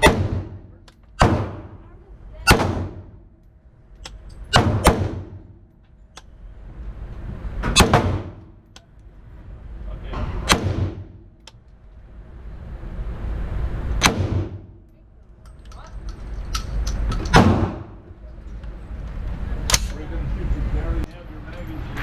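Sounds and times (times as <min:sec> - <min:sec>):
gunshots echoing indoors: 0:00.0 - 0:01.8, 0:02.4 - 0:03.4, 0:04.5 - 0:05.7, 0:07.6 - 0:08.7, 0:10.4 - 0:11.4.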